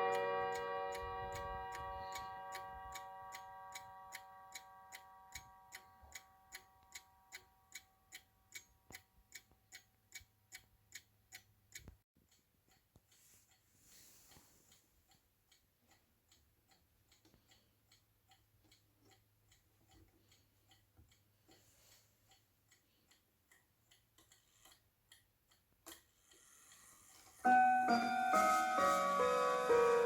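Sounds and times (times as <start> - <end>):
clock chime ringing: 0.0 - 6.0, 27.4 - 30.0
clock click: 0.0 - 13.6
clock ticking: 0.0 - 30.0.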